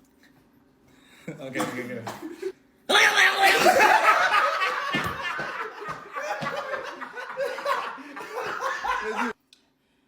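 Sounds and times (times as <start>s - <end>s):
people laughing: 3.4s - 9.4s.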